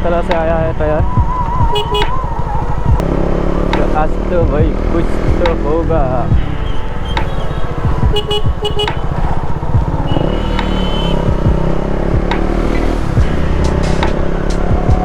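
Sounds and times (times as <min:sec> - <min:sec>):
motorcycle engine running: 0:00.3 - 0:15.0
horn toots: 0:01.7 - 0:02.2, 0:06.4 - 0:15.0.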